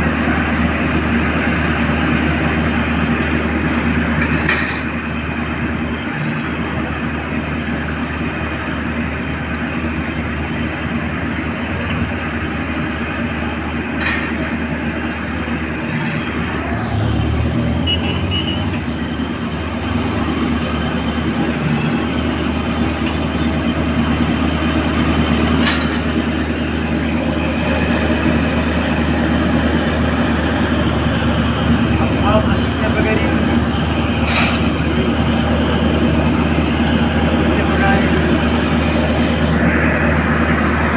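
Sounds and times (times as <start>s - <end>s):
crane engine running: 0.0s - 40.9s.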